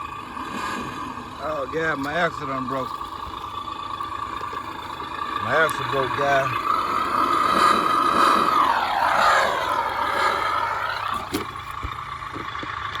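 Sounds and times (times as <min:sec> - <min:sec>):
toy car electric motor whining: 0:00.0 - 0:13.0.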